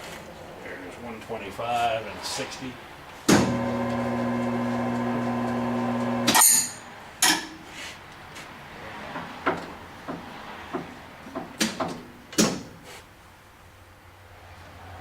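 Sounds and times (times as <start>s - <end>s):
lathe stopping with a clunk: 3.3s - 6.5s
lathe motor humming: 3.4s - 6.3s.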